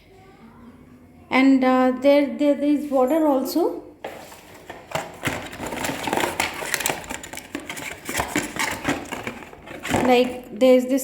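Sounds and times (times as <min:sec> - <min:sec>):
rustling: 0:04.0 - 0:10.4.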